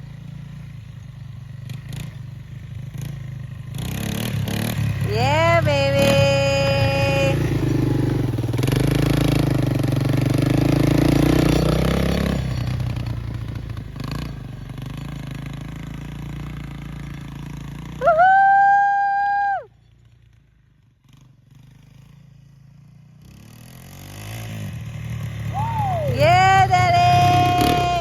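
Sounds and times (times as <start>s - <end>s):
three-wheeler engine running: 0.0s - 28.0s
person whooping: 18.0s - 19.7s, 25.5s - 28.0s.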